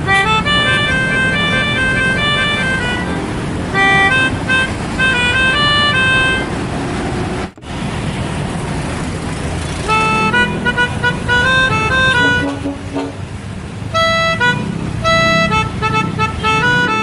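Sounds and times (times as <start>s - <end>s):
multi-tone air horn tune: 0.0s - 6.6s, 9.9s - 13.2s, 14.0s - 17.0s
bus engine running: 0.0s - 17.0s.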